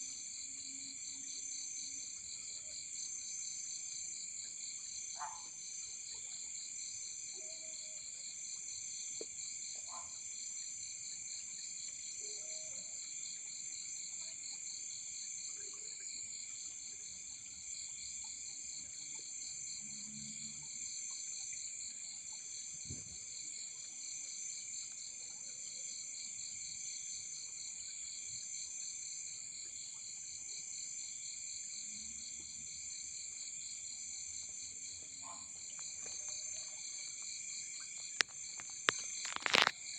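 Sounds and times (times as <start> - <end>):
crickets trilling: 30.7 - 39.9.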